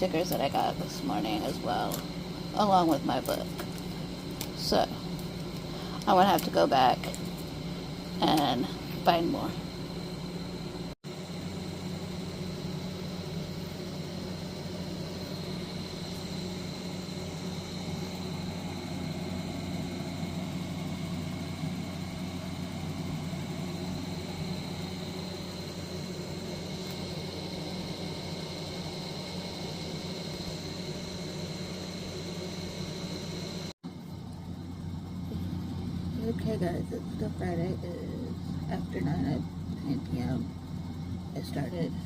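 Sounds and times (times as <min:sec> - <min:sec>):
faint high whine: 0:00.0 - 0:42.0
low mechanical hum: 0:00.0 - 0:42.0.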